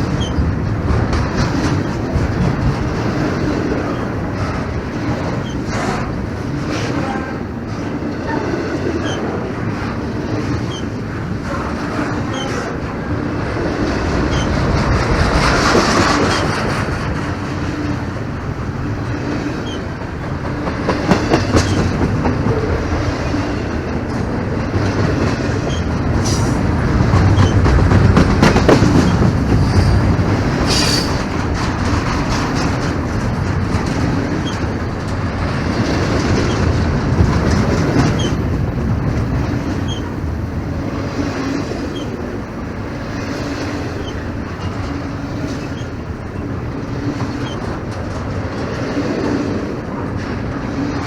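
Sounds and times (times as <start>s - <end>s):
train wheels clattering over rails: 0.0s - 51.0s
high wheel squeals: 30.6s - 31.3s.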